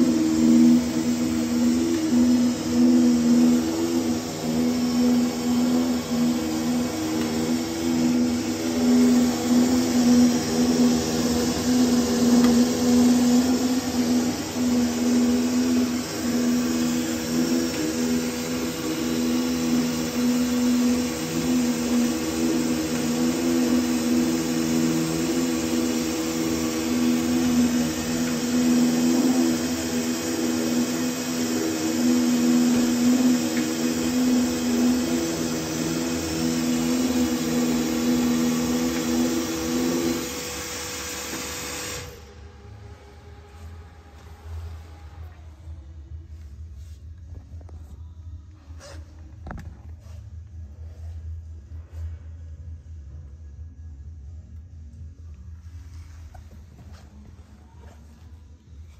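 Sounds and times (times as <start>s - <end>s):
laminating machine motor humming: 0.0s - 45.8s.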